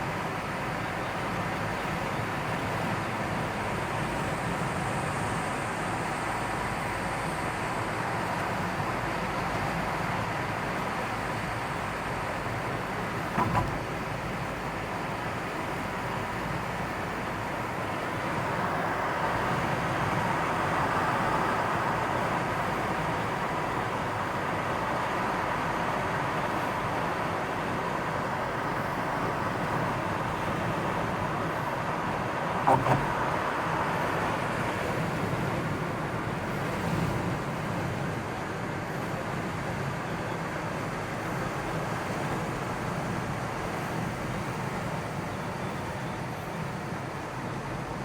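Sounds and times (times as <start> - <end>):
road traffic noise: 0.0 - 48.0.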